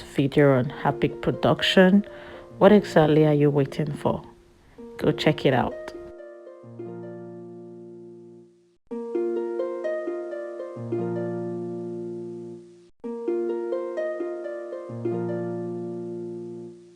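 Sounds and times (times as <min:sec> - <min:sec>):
plucked harp-like notes: 0:04.8 - 0:08.4, 0:09.0 - 0:16.8.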